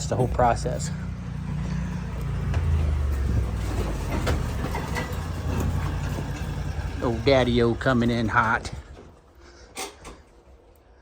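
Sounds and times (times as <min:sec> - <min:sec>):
vehicle engine humming: 0:00.0 - 0:11.0.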